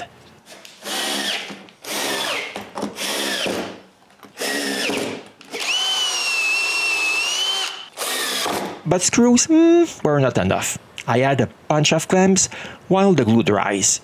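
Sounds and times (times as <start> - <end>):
cordless drill whining: 0.8 - 3.7, 4.4 - 8.6.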